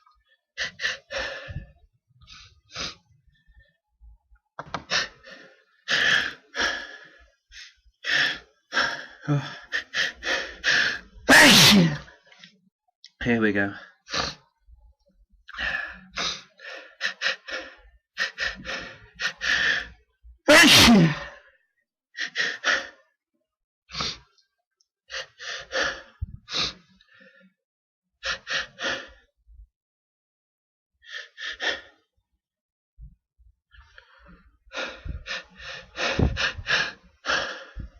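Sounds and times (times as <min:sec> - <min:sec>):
person sneezing: 0:11.3 - 0:12.1, 0:20.5 - 0:21.3.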